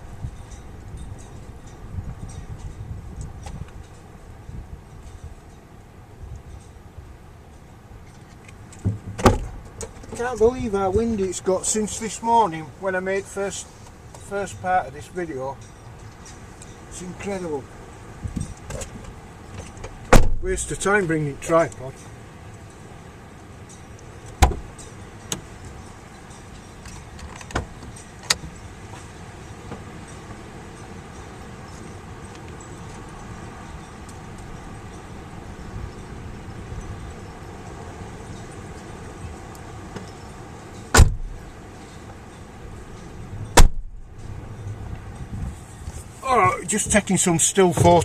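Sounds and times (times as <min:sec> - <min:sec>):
wind buffeting microphone: 0:00.0 - 0:48.0
sharp knocks: 0:24.4 - 0:24.7.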